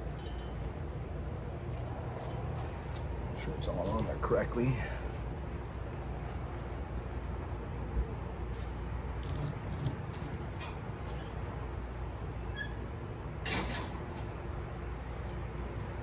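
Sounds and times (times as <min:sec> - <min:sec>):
steady low hum: 0:00.0 - 0:16.0
copper wire rustling: 0:09.1 - 0:10.8
faint high squeaks: 0:09.2 - 0:12.9.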